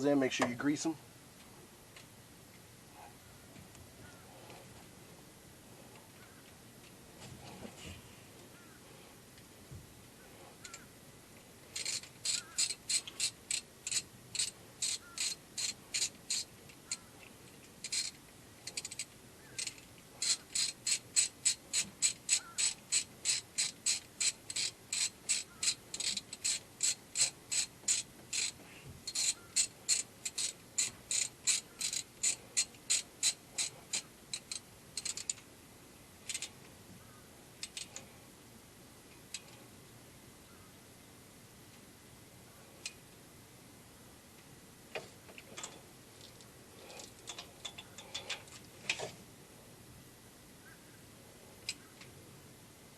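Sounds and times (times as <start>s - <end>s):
ratchet wrench clicking: 11.7s - 17.0s, 17.8s - 35.4s, 36.2s - 36.5s, 37.6s - 38.0s.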